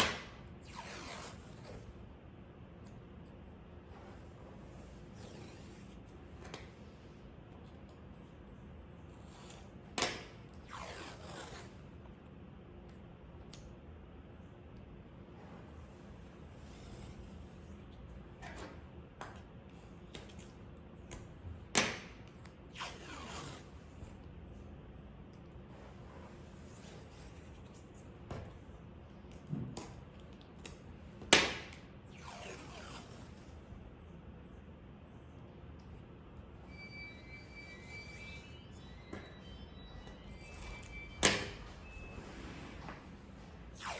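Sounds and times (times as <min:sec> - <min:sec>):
masking tape pulled off roll: 0:00.0 - 0:02.0, 0:03.9 - 0:06.7, 0:09.2 - 0:11.9, 0:21.7 - 0:24.1, 0:30.4 - 0:33.6, 0:40.3 - 0:43.9.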